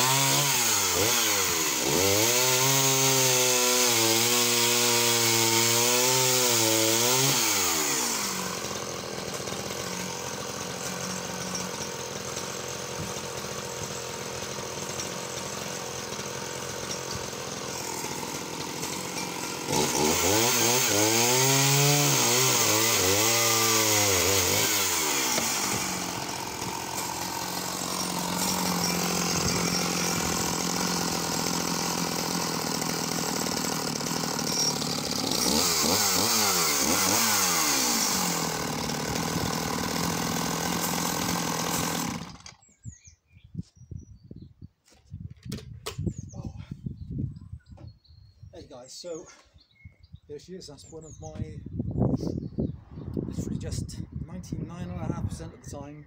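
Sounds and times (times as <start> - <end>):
chainsaw cutting wood: 0.0 - 42.7.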